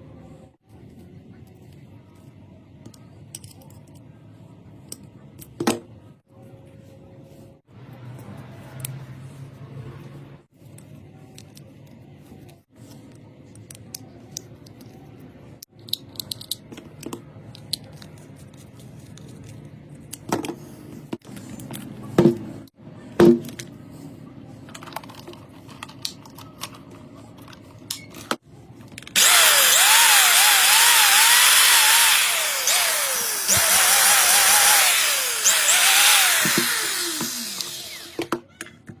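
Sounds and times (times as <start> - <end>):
electric drill running: 29.2 - 38.3.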